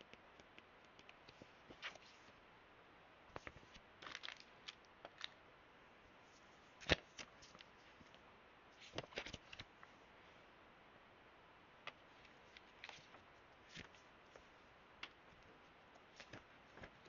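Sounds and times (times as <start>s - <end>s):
packaging clicks and rustles: 3.4s - 5.4s.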